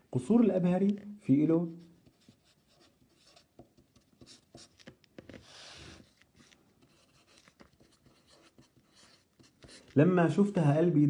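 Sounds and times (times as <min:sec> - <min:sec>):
scratching of writing: 0:01.6 - 0:10.0.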